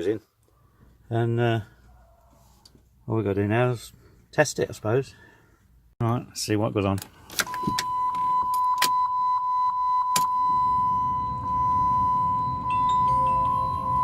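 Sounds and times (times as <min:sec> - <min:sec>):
steady high tone: 0:07.8 - 0:14.0.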